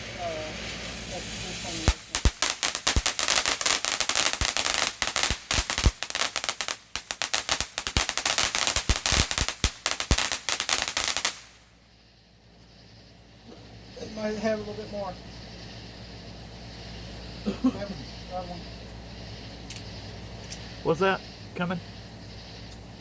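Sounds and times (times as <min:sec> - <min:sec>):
firework bangs: 0:00.0 - 0:11.9
firework crackling pops: 0:00.0 - 0:20.8, 0:22.3 - 0:23.0.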